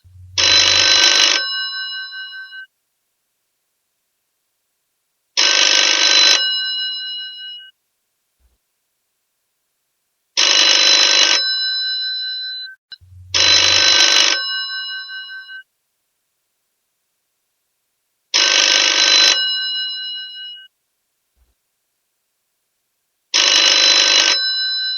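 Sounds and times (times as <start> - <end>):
old telephone bell ringing: 23.4 - 24.9.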